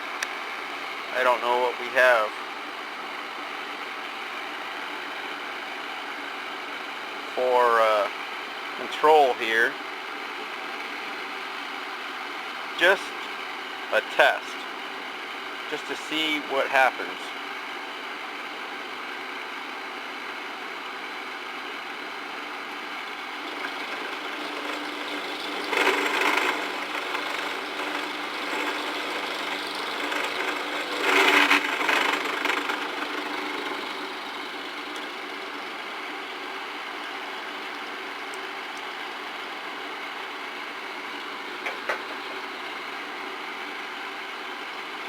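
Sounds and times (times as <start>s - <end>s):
mill-drill motor running: 23.1s - 38.0s
end mill cutting metal: 23.4s - 35.7s.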